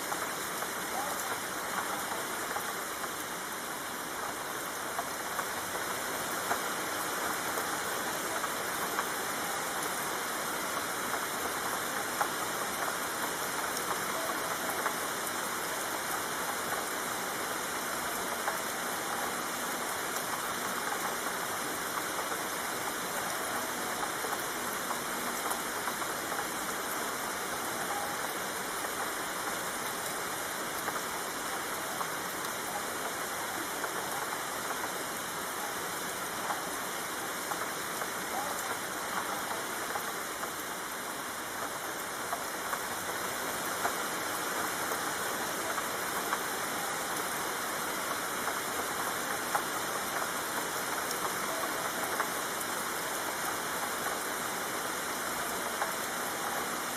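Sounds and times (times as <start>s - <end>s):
steady rain falling: 0.0s - 56.9s.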